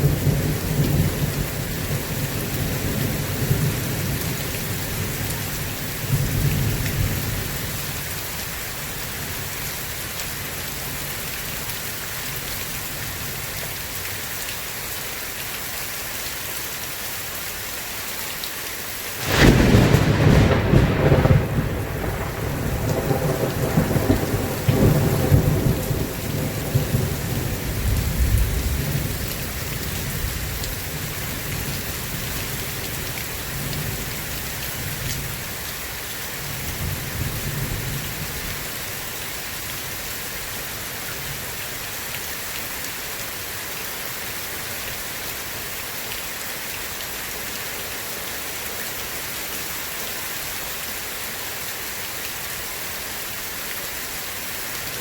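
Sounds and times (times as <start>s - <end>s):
steady rain falling: 0.0s - 55.0s
rolling thunder rumbling: 19.2s - 31.7s.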